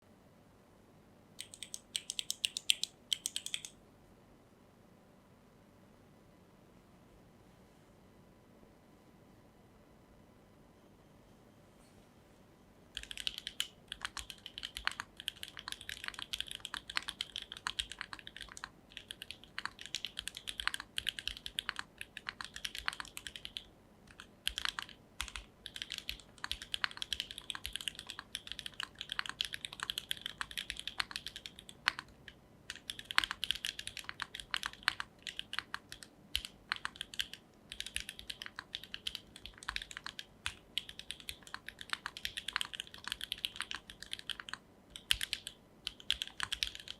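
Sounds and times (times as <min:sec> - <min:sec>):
mechanical keyboard typing clacks: 0:01.4 - 0:03.7, 0:13.0 - 0:46.9.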